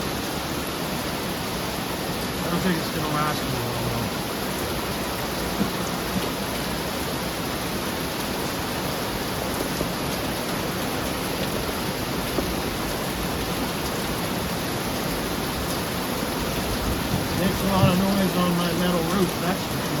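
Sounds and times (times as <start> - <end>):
heavy rain on a metal roof: 0.0 - 20.0.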